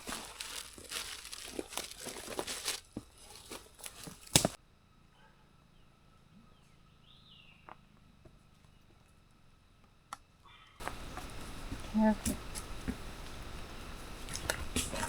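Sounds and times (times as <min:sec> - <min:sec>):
footsteps crunching through leaves: 0:00.0 - 0:04.6.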